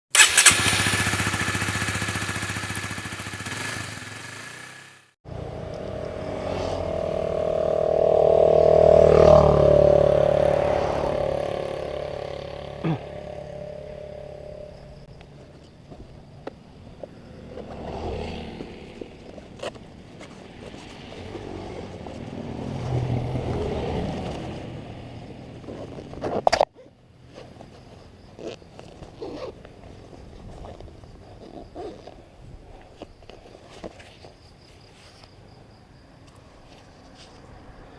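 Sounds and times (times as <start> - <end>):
motorcycle passing by: 0.2 - 15.1, 17.2 - 26.1.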